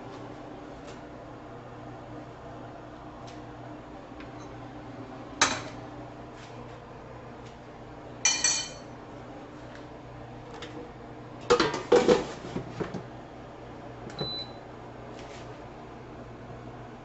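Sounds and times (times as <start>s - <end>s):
air fryer beeping: 0.0s - 6.2s, 13.2s - 14.9s.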